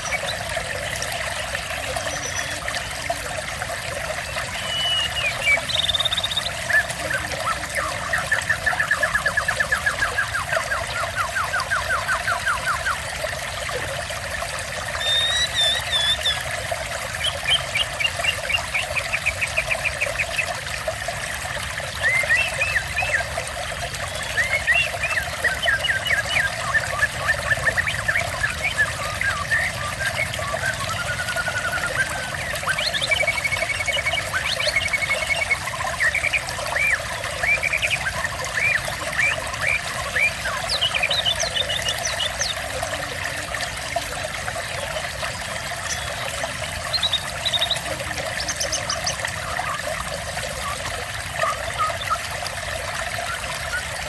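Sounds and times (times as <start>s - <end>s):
water trickling and pouring: 0.0s - 54.0s
songbird trilling and chirping: 15.0s - 16.4s.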